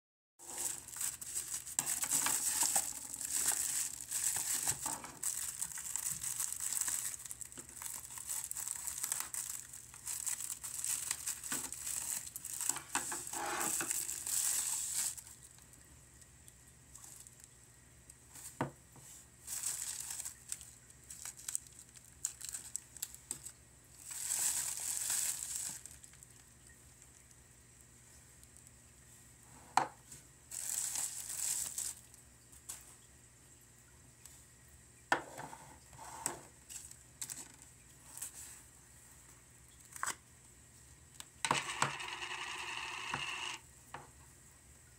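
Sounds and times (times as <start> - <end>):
packaging crinkling and tearing: 0.4 - 15.7, 19.4 - 26.5, 30.5 - 32.8.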